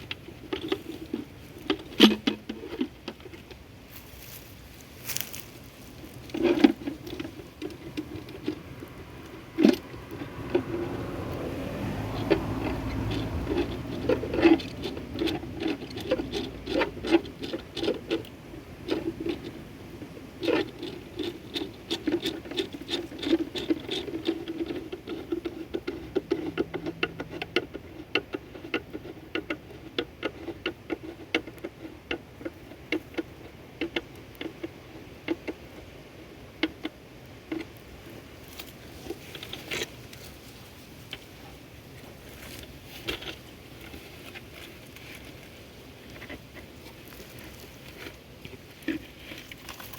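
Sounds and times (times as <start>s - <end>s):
plastic parts clicking and tapping: 12.1s - 35.9s.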